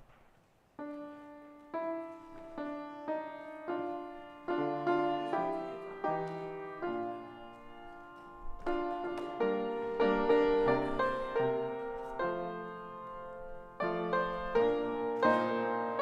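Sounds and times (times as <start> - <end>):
slow piano melody: 0.0 - 16.0.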